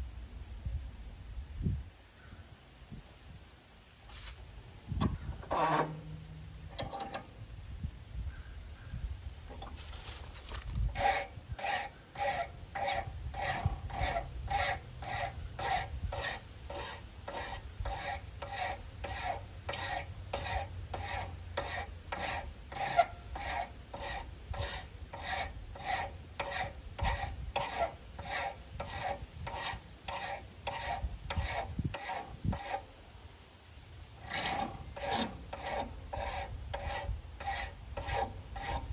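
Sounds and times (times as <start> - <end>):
hand file rasping on metal: 5.0 - 7.3, 9.5 - 33.0, 34.2 - 38.9.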